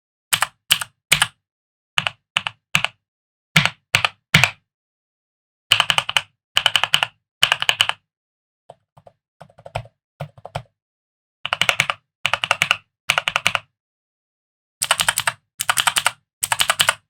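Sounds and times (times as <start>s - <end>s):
mechanical keyboard typing: 0.4s - 1.4s, 2.0s - 3.0s, 5.7s - 8.0s, 8.7s - 10.7s, 11.5s - 13.7s, 14.8s - 17.0s.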